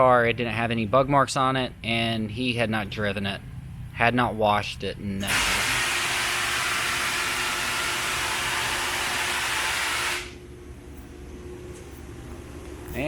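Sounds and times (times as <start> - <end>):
loud steady hiss: 5.2 - 10.4.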